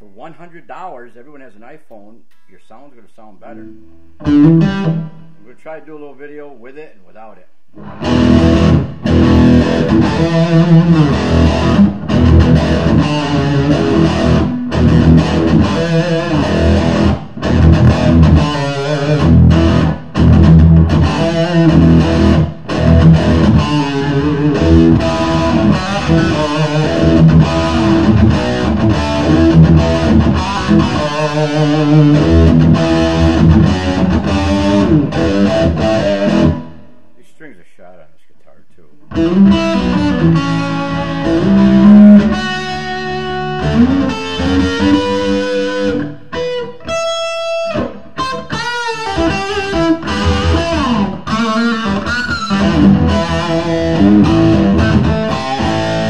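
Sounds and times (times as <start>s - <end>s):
electric guitar playing: 3.7s - 5.4s, 7.8s - 37.1s, 39.1s - 56.0s.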